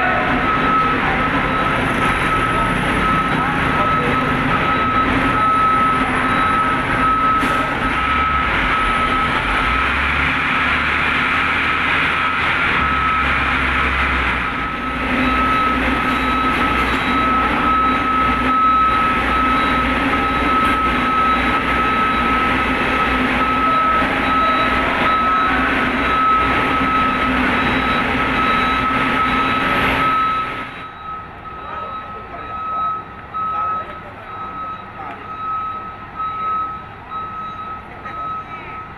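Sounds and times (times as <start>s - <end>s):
diesel engine rumbling: 0.0s - 38.9s.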